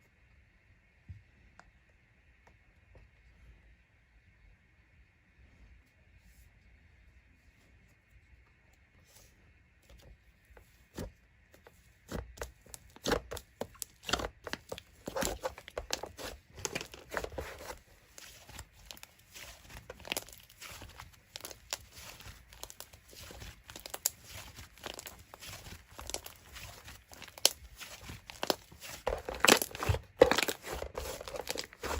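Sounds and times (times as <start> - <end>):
slime squished by hand: 12.2 - 31.9.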